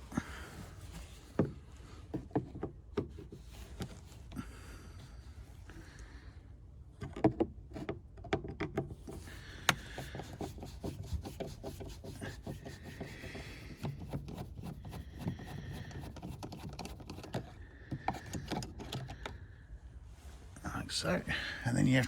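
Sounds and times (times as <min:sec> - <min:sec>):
light scraping and rubbing: 0:08.9 - 0:19.3.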